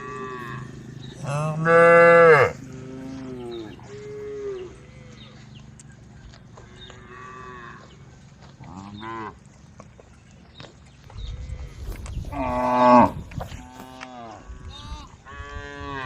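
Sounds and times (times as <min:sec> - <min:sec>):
cows mooing: 0:00.0 - 0:05.6, 0:06.5 - 0:08.0, 0:08.6 - 0:09.4, 0:12.3 - 0:16.0.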